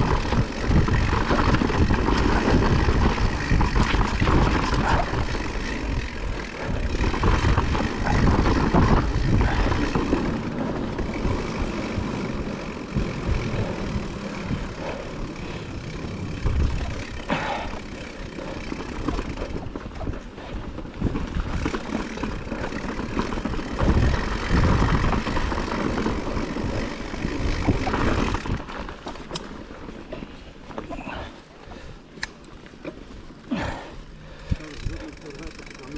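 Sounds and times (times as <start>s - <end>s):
blizzard wind gusting: 0.0s - 28.8s.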